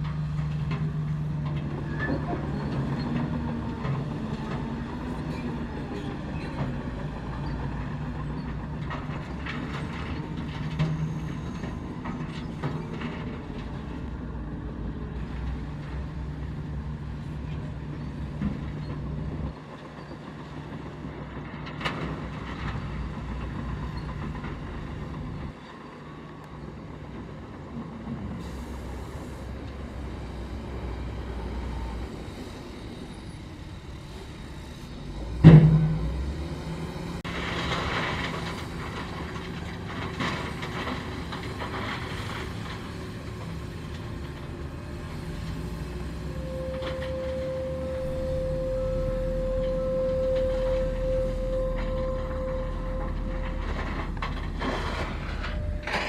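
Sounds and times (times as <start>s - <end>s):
diesel earthmoving machinery running: 0.0s - 56.0s
steady high tone: 46.3s - 56.0s.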